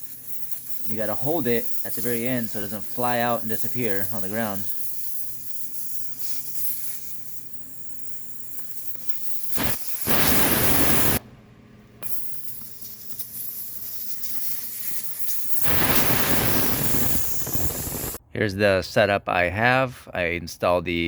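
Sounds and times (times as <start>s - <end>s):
air hissing out of tire valve: 3.8s - 11.2s, 12.0s - 18.2s.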